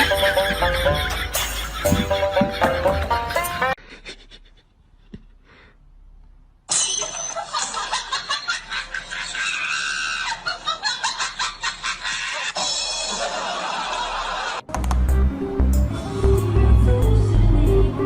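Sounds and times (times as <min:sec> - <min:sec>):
people laughing and shrieking: 0:07.3 - 0:14.6.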